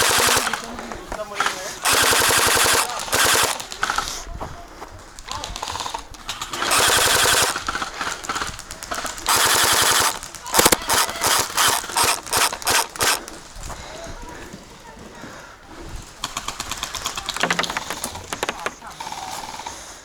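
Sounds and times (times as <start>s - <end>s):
gel blaster firing bursts: 0.0s - 0.7s, 1.8s - 4.0s, 6.5s - 13.4s.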